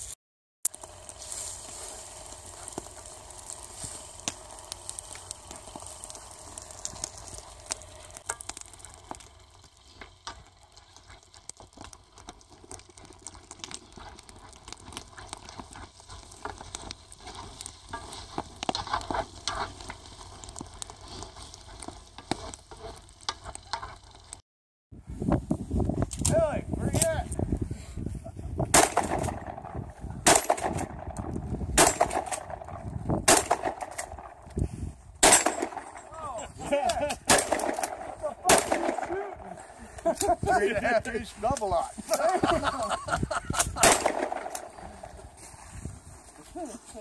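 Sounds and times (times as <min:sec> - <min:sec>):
food sizzling over camp fire: 0:00.0 - 0:24.4, 0:25.0 - 0:47.0
sharp clicks: 0:02.0 - 0:24.4.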